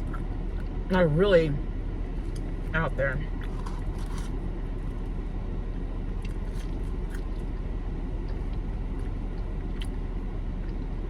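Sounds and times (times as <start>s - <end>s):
car cabin rumble: 0.0s - 11.0s
chewing clicks: 9.4s - 10.0s.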